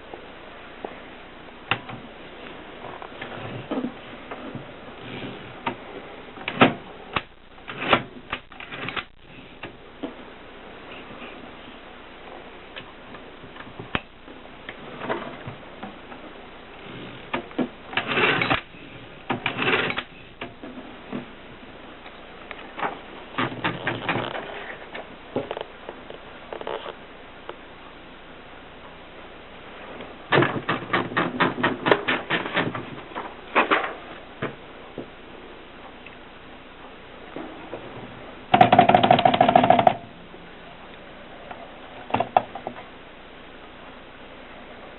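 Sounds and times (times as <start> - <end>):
typewriter mechanism rattling: 19.4 - 20.1
typewriter clicks and knocks: 38.5 - 40.0.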